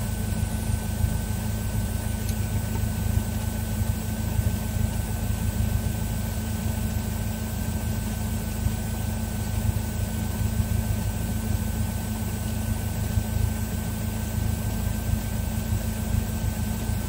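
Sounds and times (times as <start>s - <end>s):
light aircraft engine droning: 0.0s - 17.0s.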